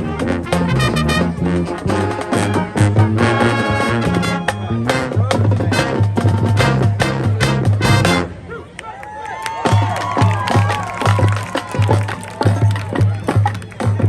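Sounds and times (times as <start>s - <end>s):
marching band brass: 0.0s - 8.6s, 9.6s - 14.0s.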